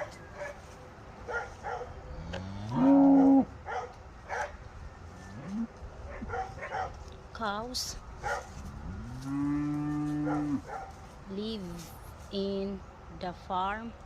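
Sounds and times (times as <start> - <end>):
cow mooing: 2.2 - 3.5, 8.8 - 10.6.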